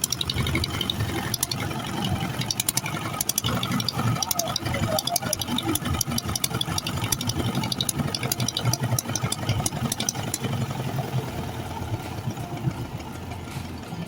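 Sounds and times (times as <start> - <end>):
clicks and rattles: 0.0 - 10.6
boat engine rumbling: 0.0 - 14.0.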